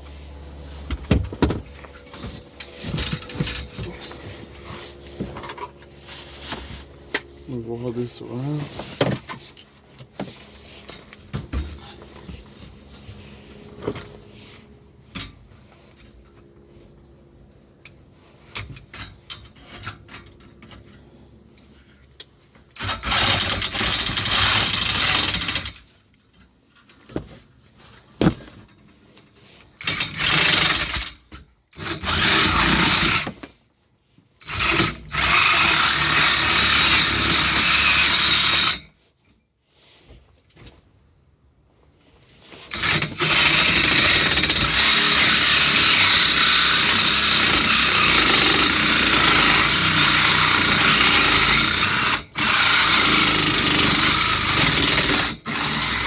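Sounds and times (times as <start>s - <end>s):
metal parts clattering: 1.6s - 4.5s, 11.5s - 12.1s, 22.8s - 25.8s, 42.7s - 56.0s
power saw cutting metal: 22.7s - 25.8s, 29.8s - 31.2s, 31.8s - 33.4s, 34.4s - 38.9s, 42.6s - 56.0s.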